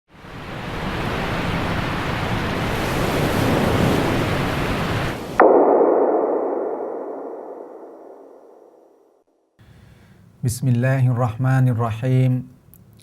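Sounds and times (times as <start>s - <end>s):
sharp ringing ping hit: 5.4s - 8.9s.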